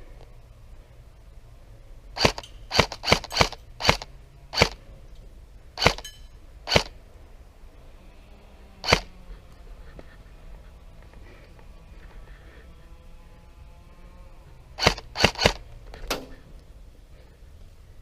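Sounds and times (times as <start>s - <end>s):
airsoft gun shots: 2.2s - 4.8s, 5.8s - 6.1s, 6.7s - 7.0s, 8.8s - 9.1s, 14.8s - 16.3s.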